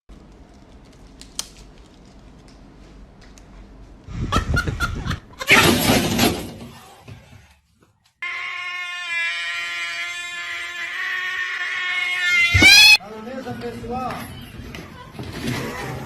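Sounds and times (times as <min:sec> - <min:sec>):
cat yowling: 0:08.2 - 0:13.0.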